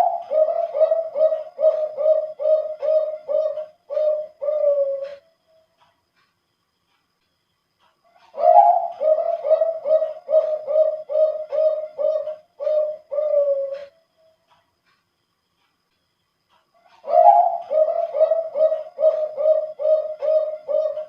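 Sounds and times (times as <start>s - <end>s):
dove cooing song: 0.0s - 5.3s, 8.1s - 14.0s, 16.9s - 21.0s.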